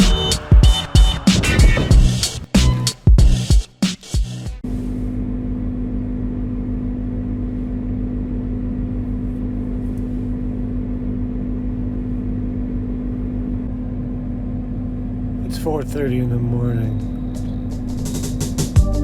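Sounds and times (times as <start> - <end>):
small car engine droning: 0.0 - 2.9.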